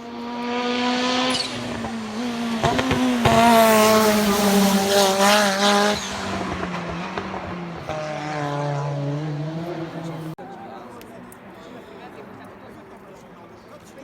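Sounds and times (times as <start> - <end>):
race car engine at high revs: 0.0 - 10.4.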